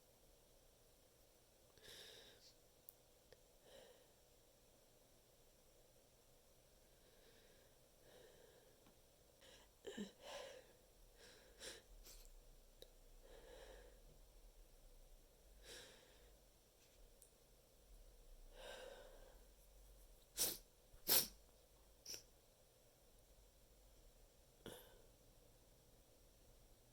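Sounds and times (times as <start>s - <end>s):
soft breaths and sniffs: 18.6s - 22.3s
muffled sneezes: 20.4s - 21.4s.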